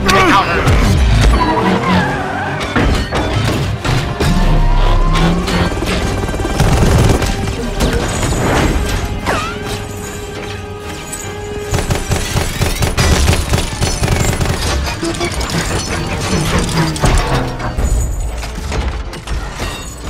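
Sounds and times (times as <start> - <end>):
action film score music: 0.0 - 20.0
rapid gunfire: 5.5 - 7.8, 11.7 - 15.1.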